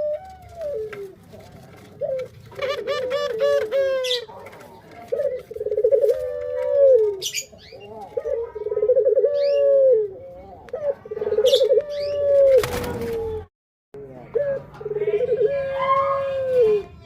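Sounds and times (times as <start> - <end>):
dove cooing: 0.0 - 13.4, 14.0 - 16.9.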